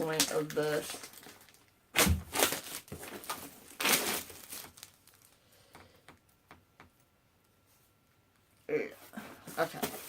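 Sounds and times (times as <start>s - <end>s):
packaging crinkling: 0.0s - 5.4s.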